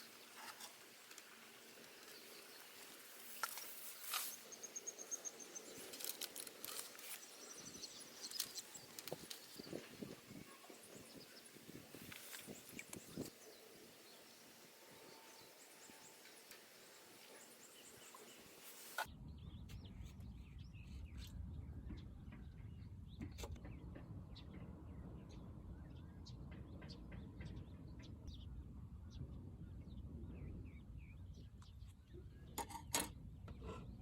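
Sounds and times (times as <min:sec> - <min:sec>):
faint hiss: 0:00.0 - 0:19.1.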